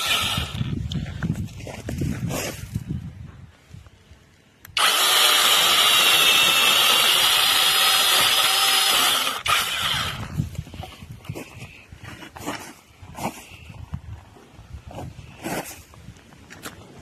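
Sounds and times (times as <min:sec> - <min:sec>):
electric chainsaw motor whining: 0:00.0 - 0:00.8, 0:04.7 - 0:10.5.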